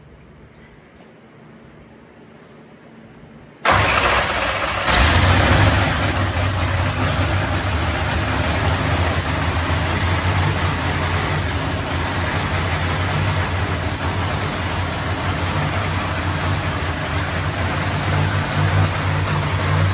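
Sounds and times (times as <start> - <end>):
race engine starting and idling: 3.6 - 19.9.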